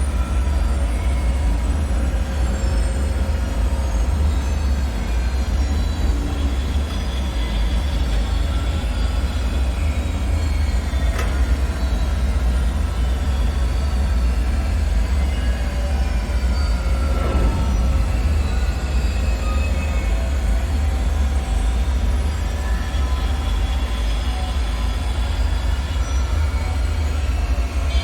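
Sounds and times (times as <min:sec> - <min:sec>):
deep rumble: 0:16.0 - 0:22.1.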